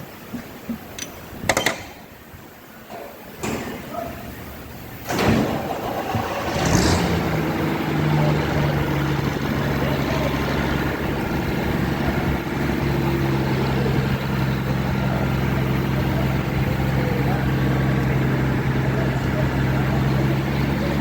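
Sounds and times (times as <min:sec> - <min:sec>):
engine idling: 0:04.5 - 0:21.0.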